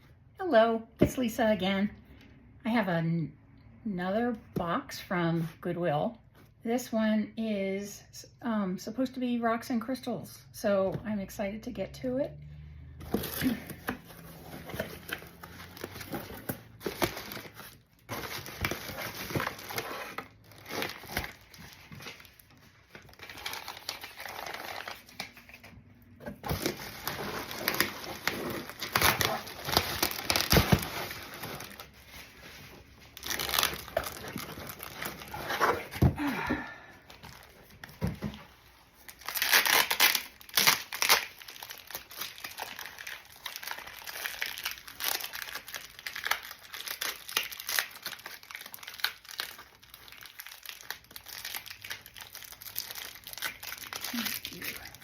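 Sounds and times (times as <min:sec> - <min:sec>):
packing material crinkling and tearing: 0:13.1 - 0:25.7, 0:26.4 - 0:36.1, 0:38.5 - 0:55.0.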